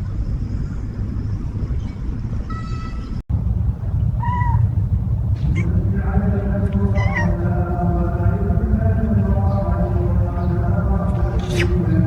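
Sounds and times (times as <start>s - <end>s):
steady low rumble: 0.0s - 12.0s
cat meowing: 4.2s - 4.6s, 6.8s - 7.4s.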